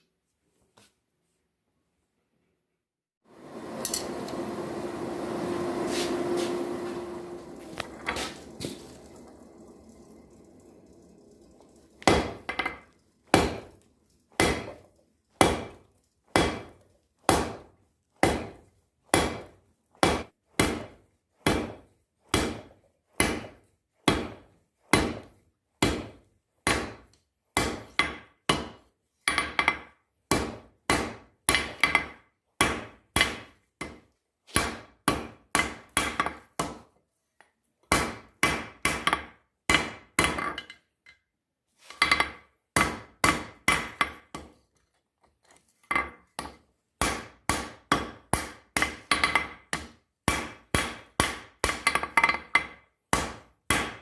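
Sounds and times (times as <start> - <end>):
hammer striking steel on anvil: 3.8 - 4.2, 12.0 - 13.7, 14.4 - 14.8, 15.4 - 26.1, 47.0 - 54.0.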